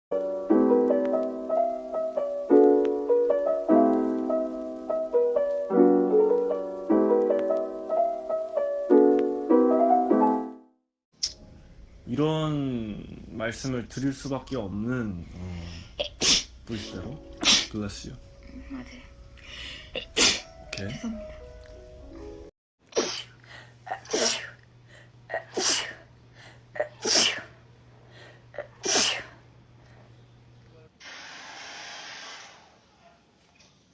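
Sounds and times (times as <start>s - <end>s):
gentle piano music: 0.1s - 10.7s, 16.7s - 22.5s
woman sneezing: 16.0s - 16.5s, 20.0s - 20.4s, 22.9s - 24.6s, 25.3s - 26.0s, 26.8s - 27.5s, 28.6s - 29.4s.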